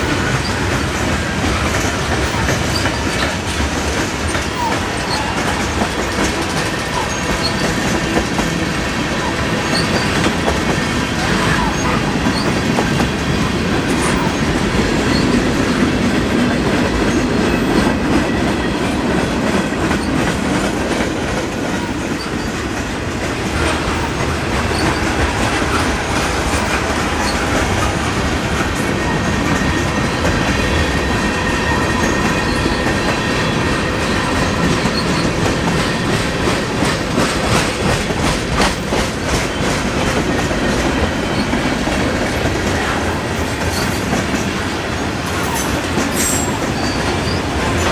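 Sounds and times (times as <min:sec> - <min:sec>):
freight train wheels clacking: 0:00.0 - 0:47.9
faint wheel squeal: 0:45.3 - 0:47.9.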